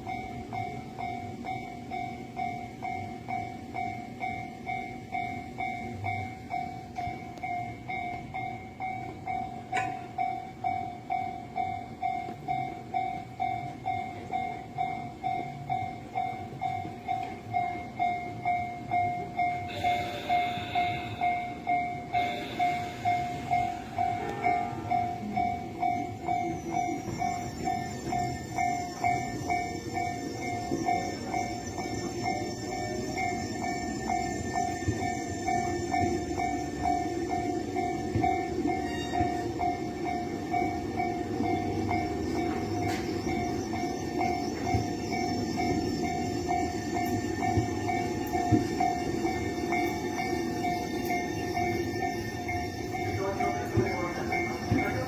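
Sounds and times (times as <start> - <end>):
level crossing warning bell: 0.0 - 55.0
train rushing past: 16.2 - 55.0.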